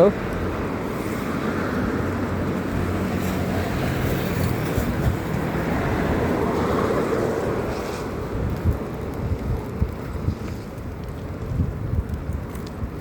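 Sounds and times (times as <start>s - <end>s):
vehicle passing: 0.0s - 8.7s
traffic on wet road: 0.0s - 13.0s
wind on microphone: 0.2s - 13.0s.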